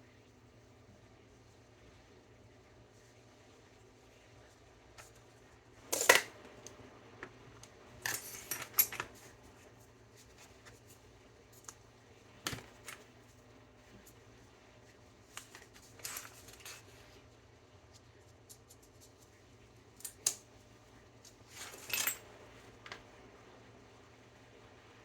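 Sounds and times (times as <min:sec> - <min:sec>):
tools clattering on workbench: 0:05.9 - 0:06.3, 0:08.0 - 0:09.2, 0:21.5 - 0:22.3.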